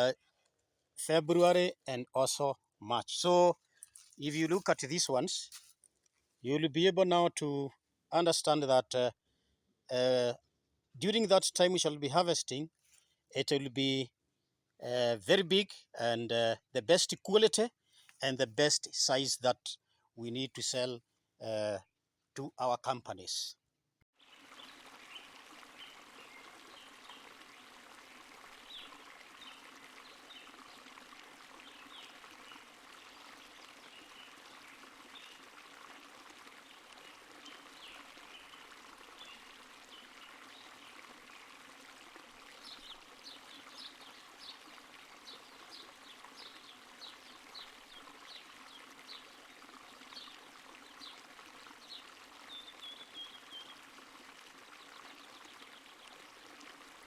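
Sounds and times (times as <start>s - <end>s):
faint rush of water: 24.2s - 57.0s
birds chirping: 24.4s - 27.8s, 28.5s - 30.9s, 31.5s - 35.5s, 42.6s - 53.8s.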